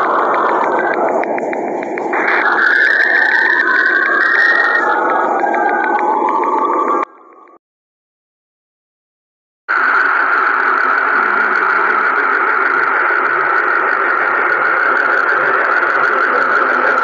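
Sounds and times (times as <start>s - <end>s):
hissing drone: 0.0s - 7.6s, 9.7s - 17.0s.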